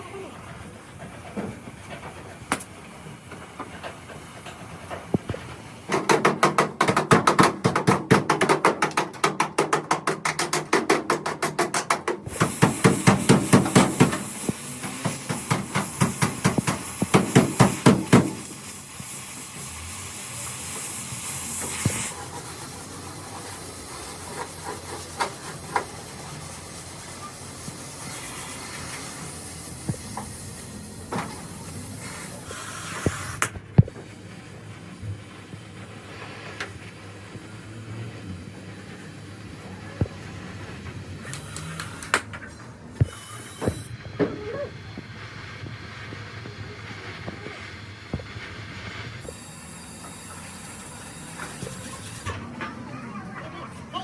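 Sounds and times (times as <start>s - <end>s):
hammering on sheet metal: 5.9s - 18.5s.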